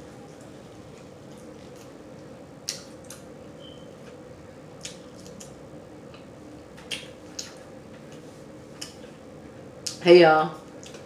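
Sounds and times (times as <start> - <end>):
steady low hum: 0.0 - 11.0
mouth smacking while chewing: 4.8 - 6.2.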